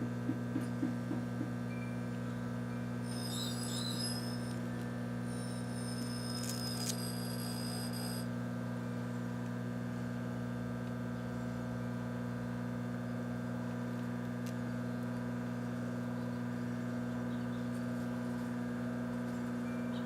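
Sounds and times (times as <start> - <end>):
microwave oven humming: 0.0 - 20.0.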